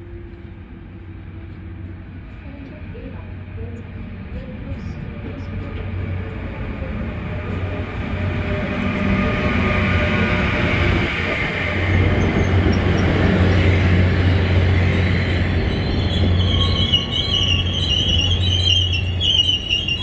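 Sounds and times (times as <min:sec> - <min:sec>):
train coaches rumbling: 0:00.0 - 0:20.0
high wavering wheel squeal: 0:11.7 - 0:20.0.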